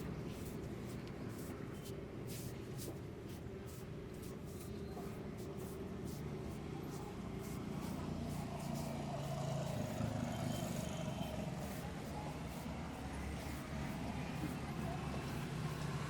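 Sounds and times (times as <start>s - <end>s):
vehicle engines rumbling: 6.0s - 16.0s.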